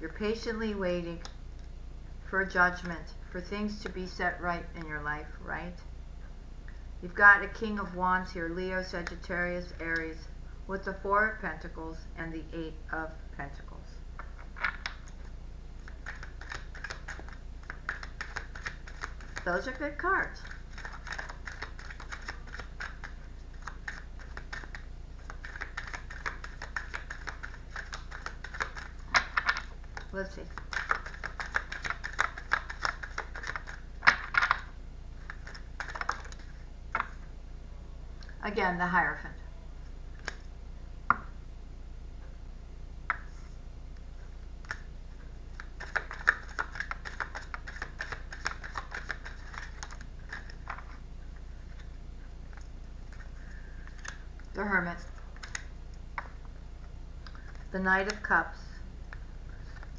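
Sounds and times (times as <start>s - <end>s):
low steady hum: 0.0s - 59.9s
cards shuffled by hand: 14.2s - 15.2s, 15.8s - 37.2s, 45.5s - 51.0s, 52.5s - 54.2s, 55.2s - 56.4s, 59.1s - 59.9s.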